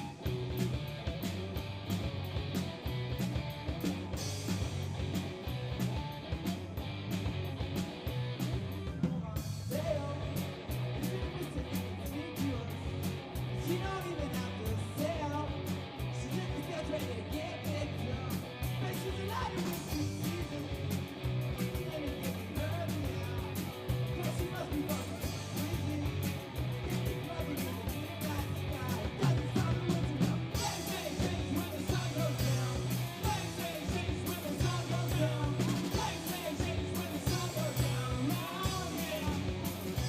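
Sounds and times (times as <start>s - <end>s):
electric guitar: 0.0s - 40.0s
live rock band playing: 0.0s - 40.0s
person singing: 8.8s - 40.0s.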